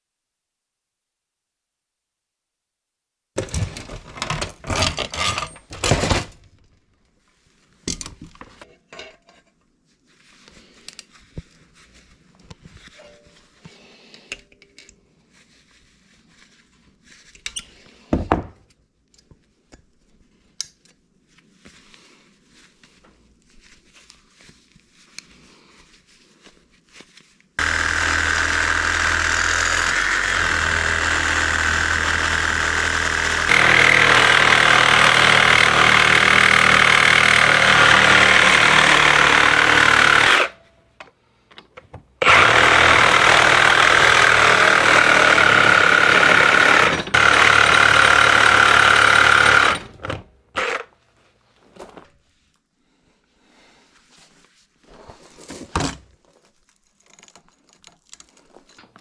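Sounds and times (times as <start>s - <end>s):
reciprocating saw cutting: 27.6s - 40.6s, 42.2s - 50.9s.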